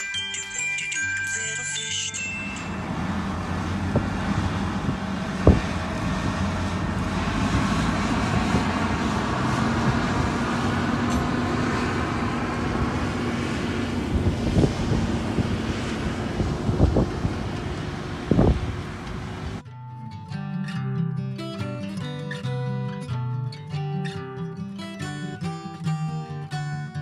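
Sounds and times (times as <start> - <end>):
road and wind noise: 2.2 - 19.6
vehicle engine running: 2.4 - 19.6.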